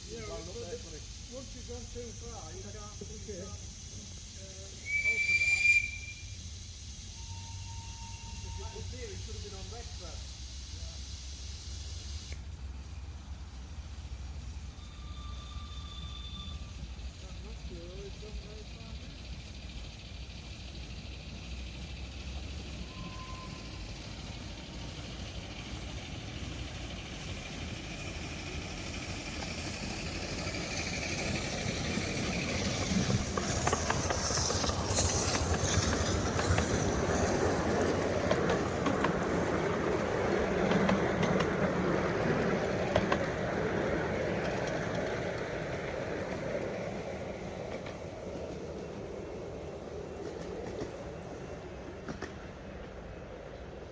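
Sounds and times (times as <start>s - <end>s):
hiss: 0.0s - 53.6s
miniature train passing: 0.0s - 53.9s
wheels clicking over rail joints: 16.8s - 53.9s.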